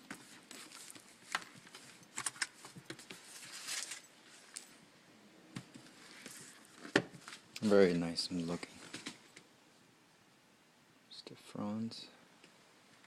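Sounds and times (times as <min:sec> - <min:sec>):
plastic packaging rustle: 0:00.0 - 0:04.8.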